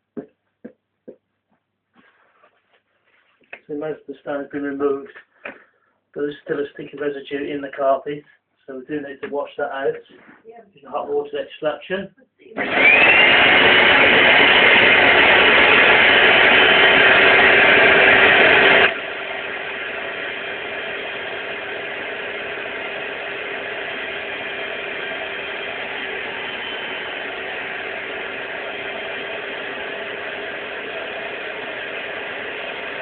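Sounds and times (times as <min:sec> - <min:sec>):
carpet extraction machine whining: 0:12.6 - 0:33.0.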